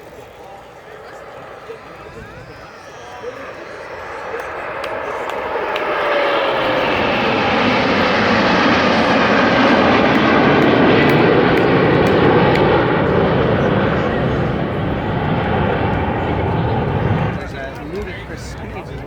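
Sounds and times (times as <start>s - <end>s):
falling engine whine: 0.0s - 19.0s
jet aircraft engine roar: 0.0s - 19.0s.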